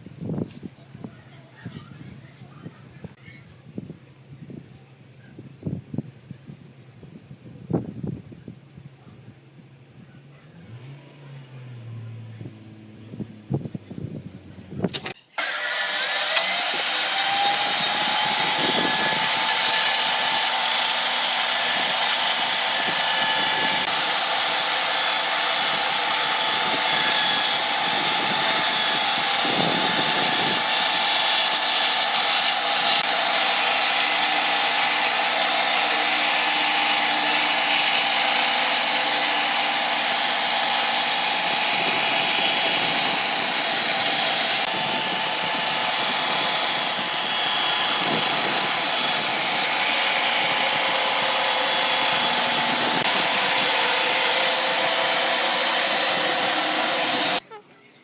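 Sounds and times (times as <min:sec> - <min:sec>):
power tool motor whine: 0:14.9 - 0:57.5.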